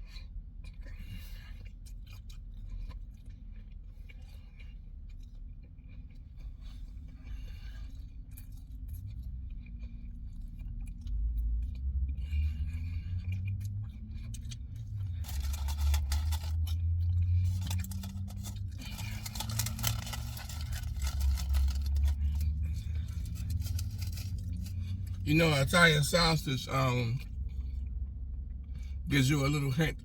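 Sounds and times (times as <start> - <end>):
steady low rumble: 0.0 - 30.0
paper wrapper rustling: 15.2 - 16.8, 17.4 - 24.7.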